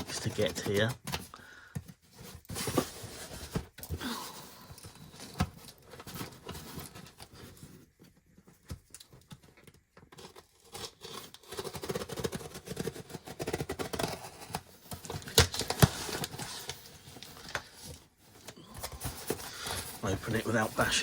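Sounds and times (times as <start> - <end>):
cardboard parcel scraping and tearing: 0.0 - 1.3, 2.0 - 7.9, 10.1 - 21.0.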